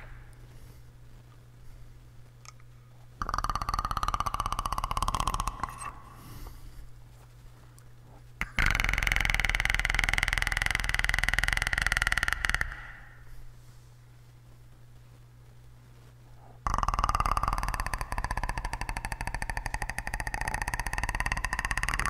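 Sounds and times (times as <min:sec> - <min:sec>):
low hum: 0:00.0 - 0:22.0
man making throat rattle: 0:03.2 - 0:06.6, 0:08.4 - 0:13.3, 0:16.6 - 0:22.0.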